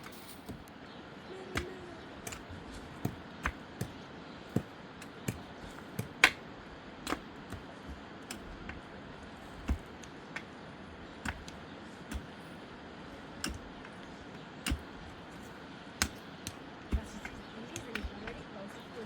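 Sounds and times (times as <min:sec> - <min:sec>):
sharp knocks and clicks: 0:07.0 - 0:08.8, 0:11.2 - 0:12.4, 0:13.4 - 0:14.0, 0:14.7 - 0:15.0, 0:16.0 - 0:18.4.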